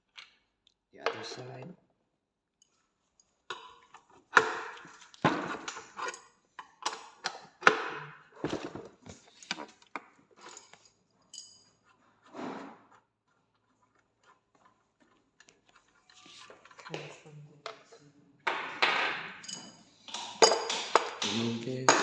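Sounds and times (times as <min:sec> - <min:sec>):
hard objects knocking and clattering: 0:03.5 - 0:10.8, 0:18.4 - 0:22.0.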